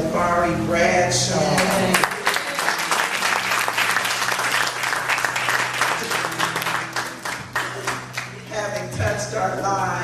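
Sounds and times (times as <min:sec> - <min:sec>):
crowd applauding: 0:01.6 - 0:08.9.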